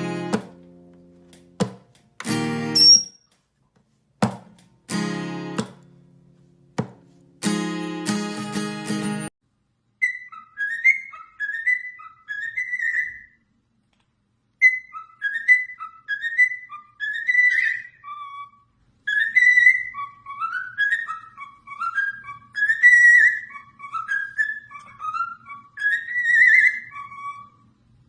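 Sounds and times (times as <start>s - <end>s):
parrot whistling a tune: 2.8s - 3.2s, 10.0s - 13.4s, 14.6s - 27.7s.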